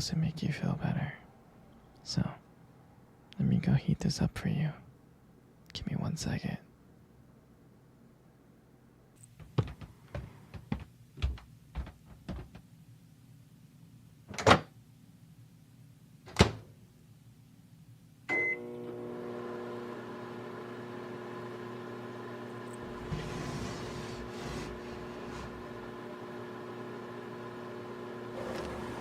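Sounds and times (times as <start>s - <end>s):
light footsteps: 9.2s - 12.7s
microwave oven humming: 18.2s - 29.0s
microwave beep: 18.3s - 19.0s.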